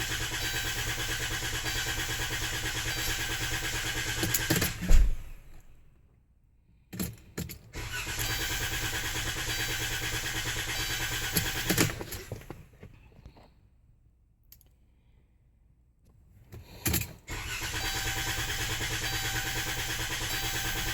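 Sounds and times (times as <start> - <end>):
engine cranking by starter: 0.0 - 5.9, 7.5 - 12.6, 16.8 - 20.9
loud thump: 4.7 - 5.7.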